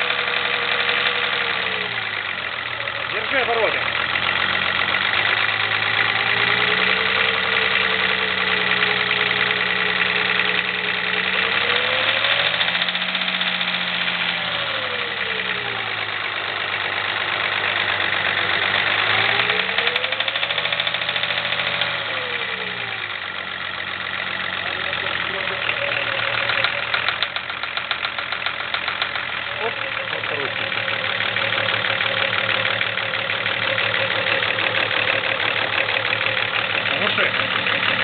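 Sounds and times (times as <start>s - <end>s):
diesel engine revving with knock: 0.0s - 38.0s.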